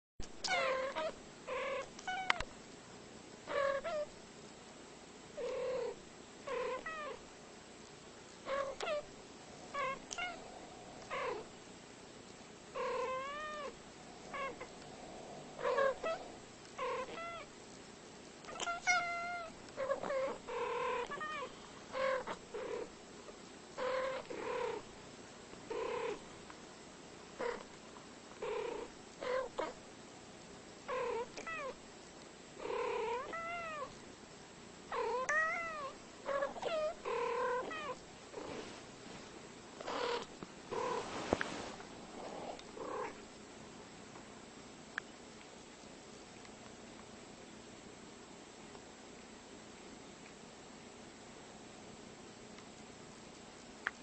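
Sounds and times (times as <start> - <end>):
cats meowing: 9.7 - 10.4, 15.6 - 16.4, 18.5 - 22.4, 35.0 - 38.0.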